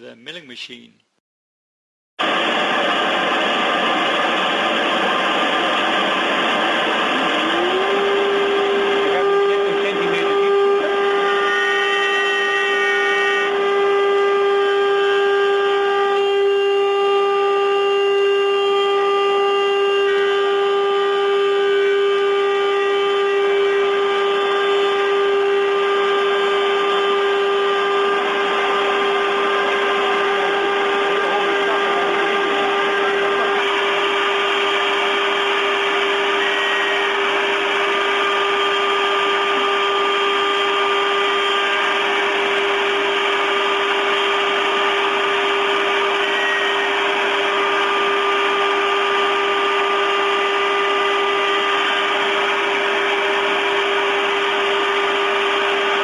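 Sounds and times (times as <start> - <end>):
milling cutter cutting noise: 2.2 - 13.6, 19.5 - 56.0
milling spindle whine: 2.2 - 56.0.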